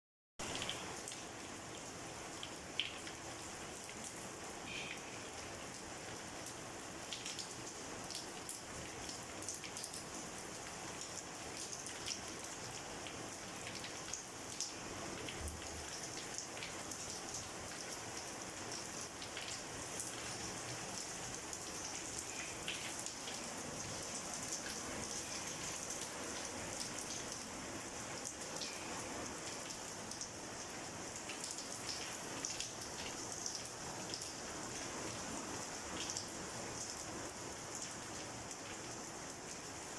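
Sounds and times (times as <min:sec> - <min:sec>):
rain falling: 0:00.4 - 0:39.9.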